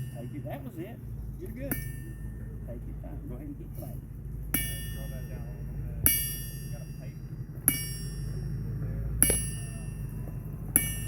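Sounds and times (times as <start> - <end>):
hammer striking steel on anvil: 0.0 - 11.0
steady low hum: 0.0 - 11.0.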